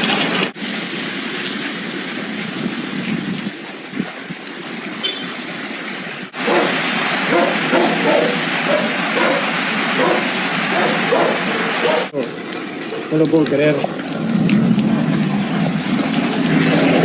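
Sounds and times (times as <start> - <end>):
gusting wind: 0.0 - 13.1
hail and rain beating down: 0.0 - 17.0.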